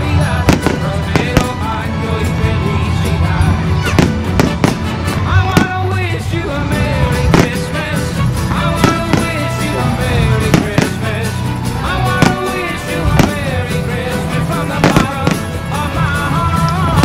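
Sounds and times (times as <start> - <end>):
loud music on sound system: 0.0 - 17.0
fireworks bangs: 0.3 - 1.8, 3.8 - 6.2, 7.2 - 8.0, 8.6 - 15.8.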